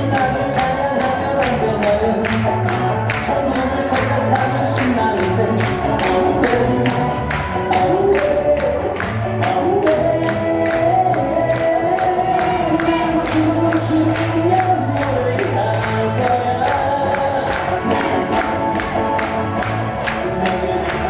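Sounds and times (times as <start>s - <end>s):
group of voices singing: 0.0s - 21.0s
upbeat praise music beat: 0.0s - 21.0s.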